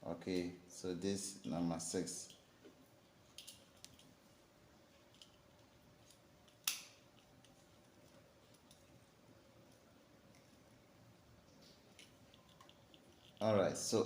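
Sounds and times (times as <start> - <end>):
faint clicks of wire handling: 2.2 - 4.2, 4.9 - 9.0, 11.4 - 13.5.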